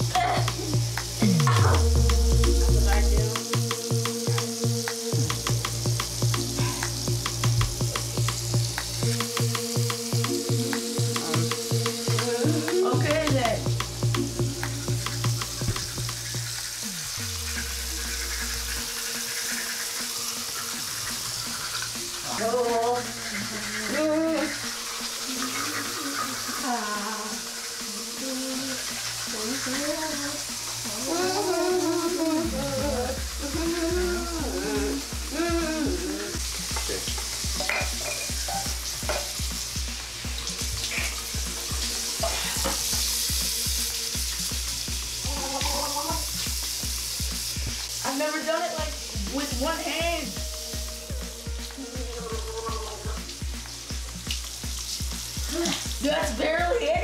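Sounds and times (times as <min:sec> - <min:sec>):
beat with bass line: 0:00.0 - 0:19.0, 0:31.1 - 0:47.9
toothbrush scrubbing teeth: 0:00.0 - 0:47.9, 0:51.5 - 0:56.8
tap water running: 0:00.0 - 0:57.0.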